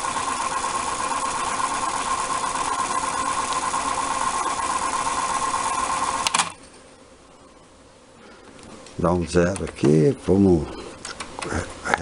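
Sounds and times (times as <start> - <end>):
cassette deck rewinding whir: 0.0 - 6.6.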